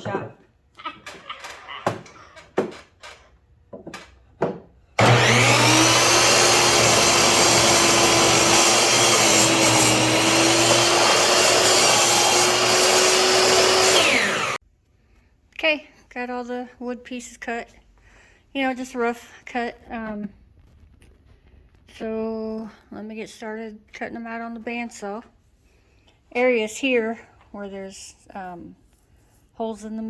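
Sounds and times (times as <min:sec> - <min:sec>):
power tool motor whining: 0:05.0 - 0:14.6.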